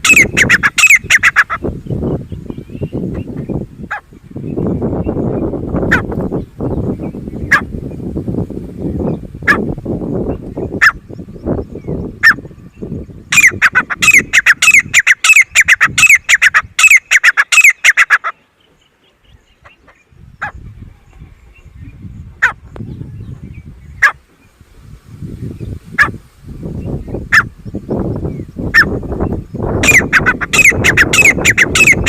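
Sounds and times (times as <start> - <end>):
francolin calling: 0.0 - 6.0, 10.6 - 20.6, 26.8 - 32.0.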